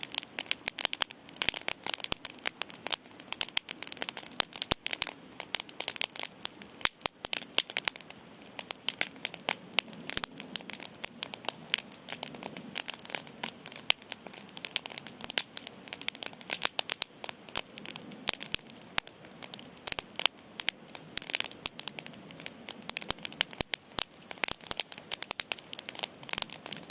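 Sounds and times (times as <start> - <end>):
campfire crackling: 0.0 - 26.9
steady fire hiss: 0.0 - 26.9.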